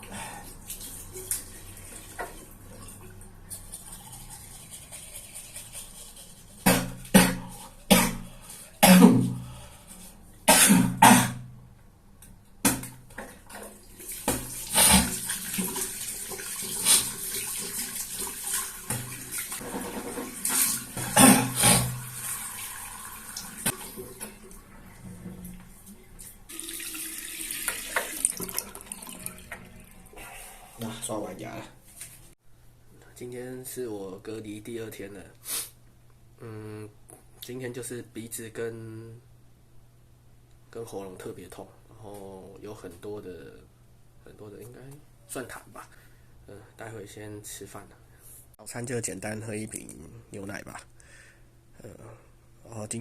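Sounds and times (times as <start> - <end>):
teeth being brushed: 4.0 - 6.7
person spitting: 6.6 - 9.4, 10.5 - 11.4, 14.7 - 15.2, 21.0 - 22.0
person coughing: 6.7 - 9.4, 10.5 - 11.4, 21.0 - 21.9
tap running: 25.0 - 29.8.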